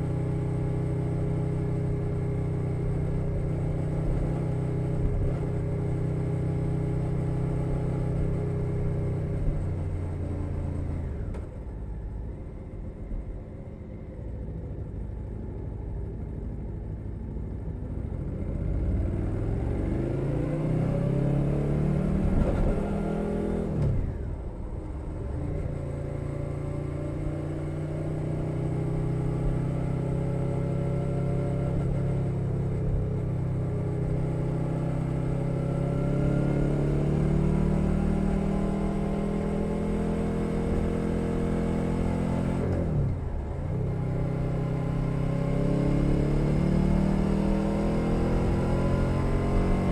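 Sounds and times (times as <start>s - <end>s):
motorcycle engine revving: 33.5s - 49.9s.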